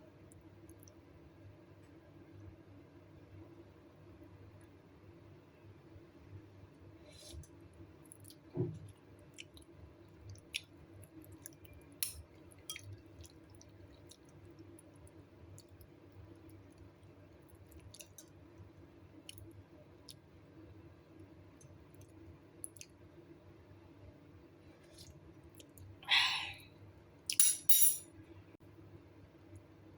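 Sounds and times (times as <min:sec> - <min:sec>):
spoon clicking on bowl: 0:27.3 - 0:28.0.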